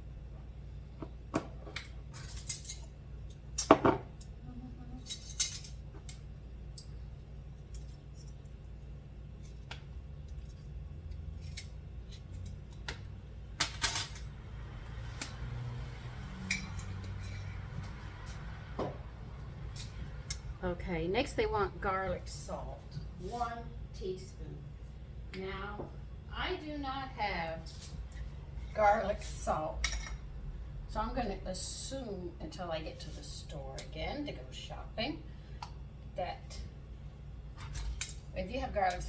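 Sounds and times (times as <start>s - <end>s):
low steady hum: 0.0s - 39.0s
measuring spoons clinking: 16.4s - 17.6s.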